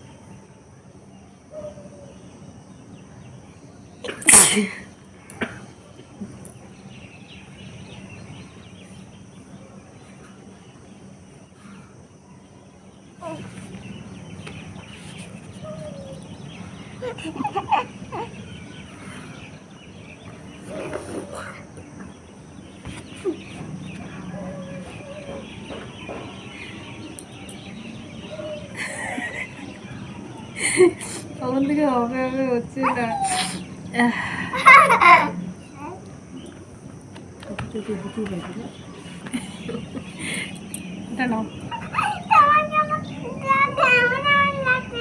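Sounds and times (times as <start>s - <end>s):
birds chirping: 0.0s - 45.0s
steady low hum: 0.0s - 45.0s.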